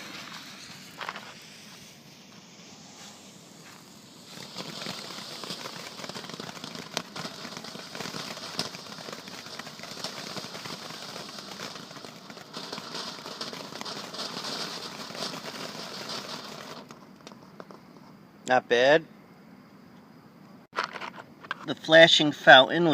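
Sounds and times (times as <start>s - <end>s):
firework fountain hissing and crackling: 0.0s - 17.8s
sharp firework pops: 0.0s - 18.1s.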